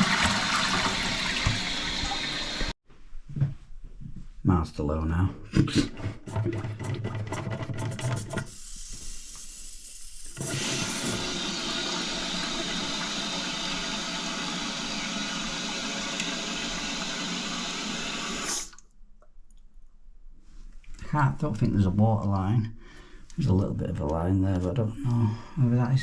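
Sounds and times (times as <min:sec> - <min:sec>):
toilet cistern refilling: 0:00.0 - 0:02.8, 0:05.8 - 0:18.8.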